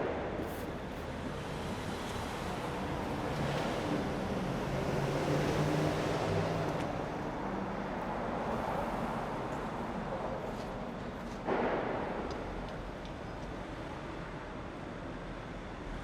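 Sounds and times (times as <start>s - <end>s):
road traffic passing: 0.0s - 16.0s
vehicle engine hum: 0.4s - 11.4s.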